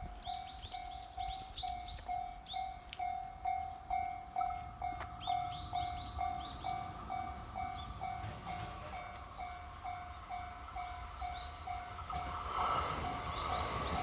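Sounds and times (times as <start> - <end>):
level-crossing warning bell ringing: 0.0 - 14.0.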